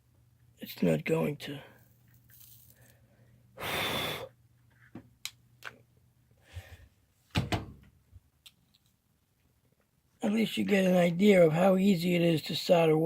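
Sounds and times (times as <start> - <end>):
small clicks from handling wires: 8.4 - 9.9.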